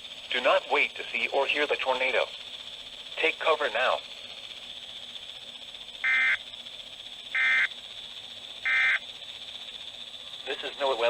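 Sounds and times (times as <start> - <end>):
radio hiss: 0.0 - 4.3, 10.2 - 11.0
two-tone digital buzzes: 6.0 - 6.4, 7.3 - 7.7, 8.6 - 9.0.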